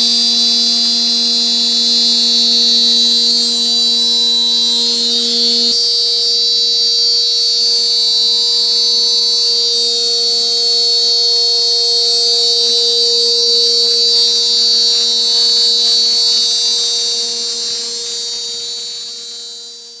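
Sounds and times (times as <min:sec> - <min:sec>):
router spindle whining: 0:00.0 - 0:05.9, 0:12.7 - 0:19.9.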